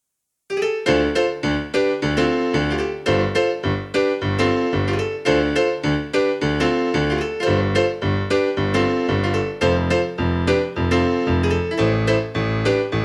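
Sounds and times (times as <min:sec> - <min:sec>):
keyboard playing piano chords: 0:00.5 - 0:13.0.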